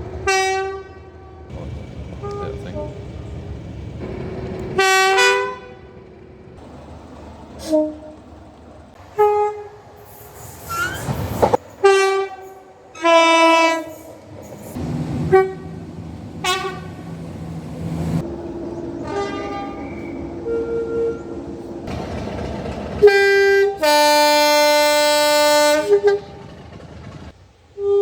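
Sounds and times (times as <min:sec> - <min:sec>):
train running noise: 0:00.0 - 0:27.9
train horn blasts: 0:00.2 - 0:01.5, 0:02.2 - 0:03.1, 0:04.0 - 0:06.0, 0:07.6 - 0:08.2, 0:09.1 - 0:10.1, 0:11.8 - 0:14.0, 0:15.2 - 0:15.8, 0:16.4 - 0:17.2, 0:19.0 - 0:21.9, 0:23.0 - 0:26.4, 0:27.8 - 0:28.0.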